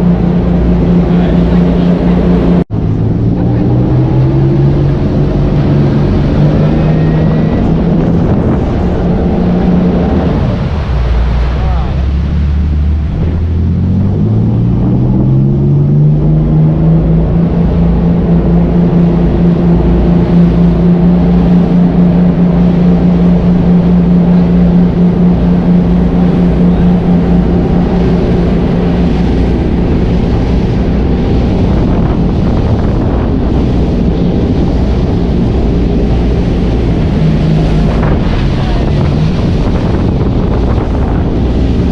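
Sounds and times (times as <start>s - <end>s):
jet ski engine: 0.0s - 41.9s
wind buffeting microphone: 0.0s - 41.9s.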